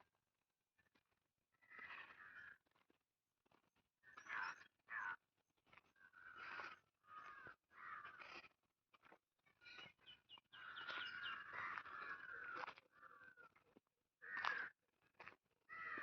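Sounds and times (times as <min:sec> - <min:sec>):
crows cawing: 0:01.6 - 0:02.6, 0:04.0 - 0:05.2, 0:05.8 - 0:08.6, 0:09.7 - 0:16.0.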